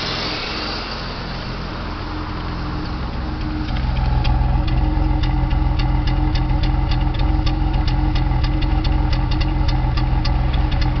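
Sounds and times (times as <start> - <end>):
car engine rough idling: 0.0 - 11.0
sharp engine ticks: 2.4 - 11.0.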